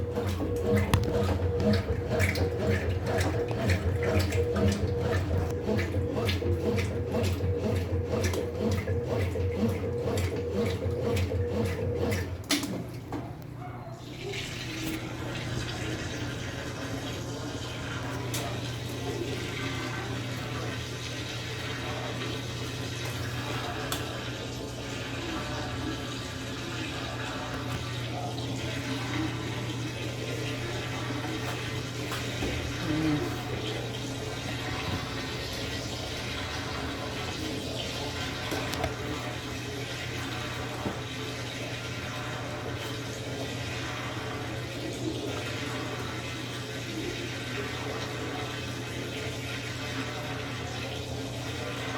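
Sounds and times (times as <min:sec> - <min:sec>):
washing machine low hum: 0:00.0 - 0:51.9
water rushing in washing machine: 0:00.0 - 0:51.9.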